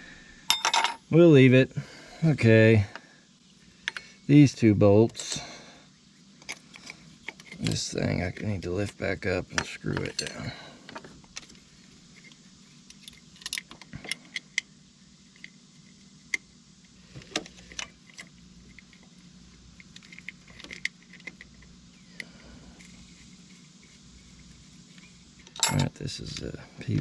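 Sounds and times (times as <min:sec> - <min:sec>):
faint steady hum: 0:00.0 - 0:27.0
metallic clinks of hand tools: 0:25.6 - 0:26.0.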